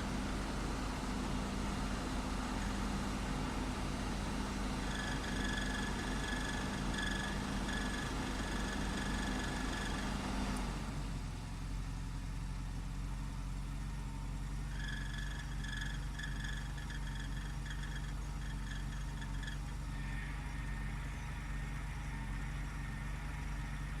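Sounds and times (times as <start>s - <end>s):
rotary engine idling: 0.0s - 11.0s, 13.6s - 24.0s
high-pitched stuttering buzz: 4.8s - 10.1s.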